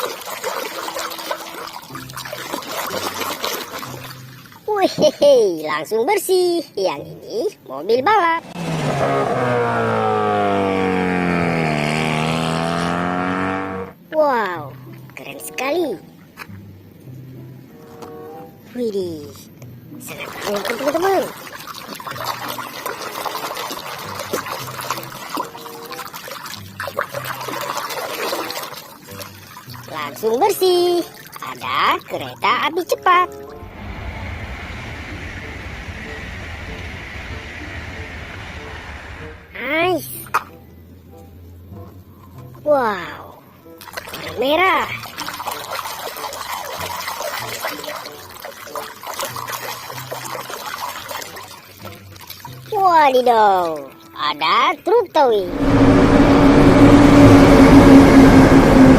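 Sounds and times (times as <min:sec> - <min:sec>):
water trickling and splashing: 0:00.0 - 0:05.9, 0:18.8 - 0:37.2, 0:41.8 - 0:55.8.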